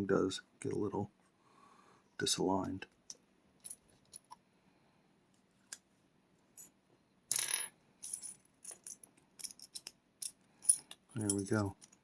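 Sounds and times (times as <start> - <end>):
metal lock parts clicking: 8.7 - 12.0.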